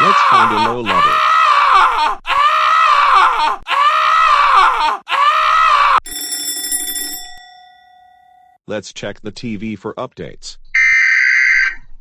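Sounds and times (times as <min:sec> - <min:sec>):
cartoon scream: 0:00.0 - 0:06.0, 0:10.8 - 0:11.8.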